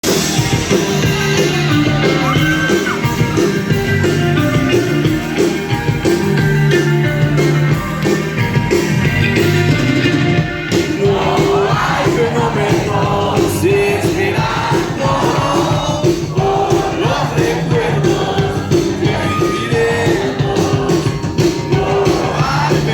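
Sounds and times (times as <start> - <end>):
rock band playing live: 0.0 - 22.9
person singing: 10.8 - 22.9.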